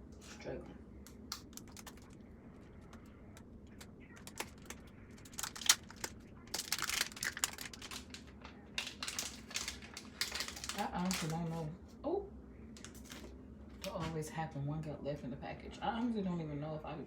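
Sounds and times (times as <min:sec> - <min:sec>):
plastic packaging crinkling: 0:01.3 - 0:11.7, 0:12.8 - 0:13.9.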